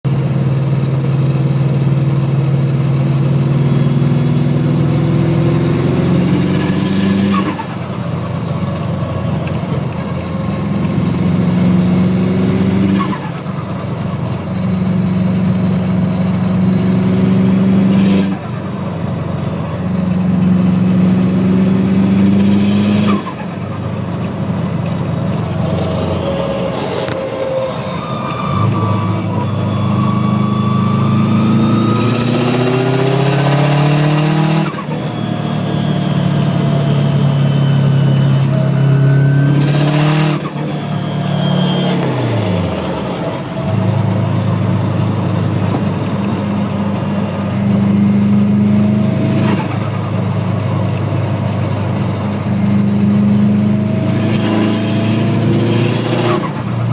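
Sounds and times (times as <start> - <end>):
car engine pulling: 0.0 - 56.9
turbo flutter and whistle: 25.4 - 44.2.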